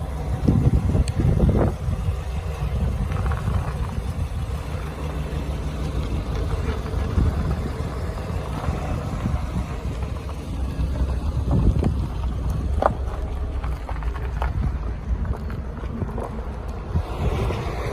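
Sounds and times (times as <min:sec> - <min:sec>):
car engine low rumble: 0:00.0 - 0:17.9.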